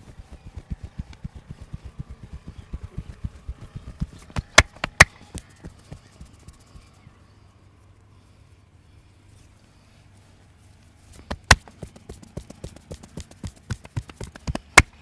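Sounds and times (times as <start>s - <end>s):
hands tapping head massage: 0.0s - 6.9s, 11.1s - 15.0s.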